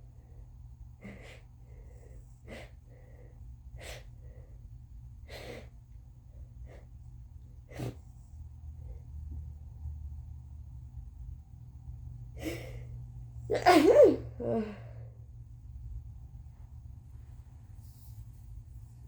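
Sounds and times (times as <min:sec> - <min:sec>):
woman sneezing: 0:13.5 - 0:14.8.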